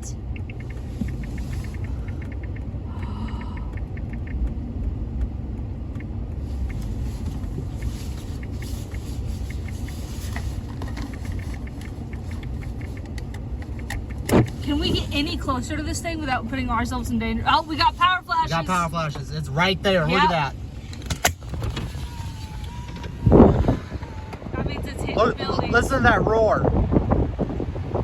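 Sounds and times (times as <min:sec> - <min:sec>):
low rumble inside a car: 0:00.0 - 0:28.0
fast light ticks: 0:00.2 - 0:10.0.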